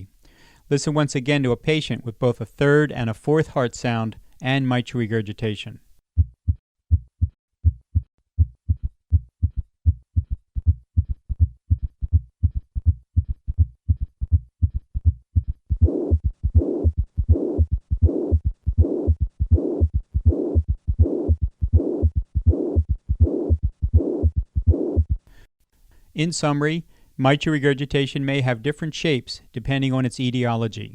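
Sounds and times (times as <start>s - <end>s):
heart murmur: 6.2s - 25.3s
heartbeat gallop rhythm: 6.2s - 25.3s.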